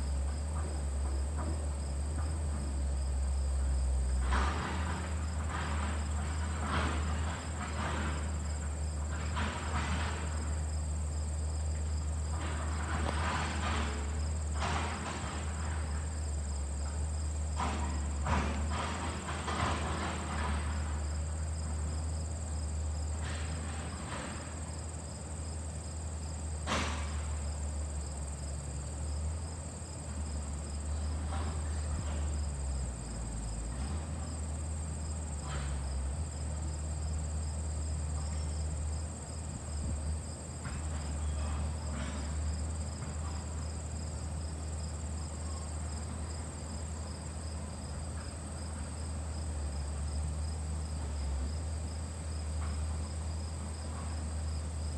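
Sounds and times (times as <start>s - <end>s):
crickets chirping: 0.0s - 54.9s.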